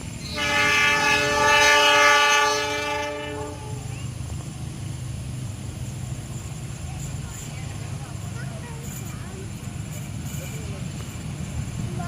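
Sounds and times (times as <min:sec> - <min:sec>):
train rumbling past: 0:00.0 - 0:12.0
train horn long blast: 0:00.2 - 0:03.9.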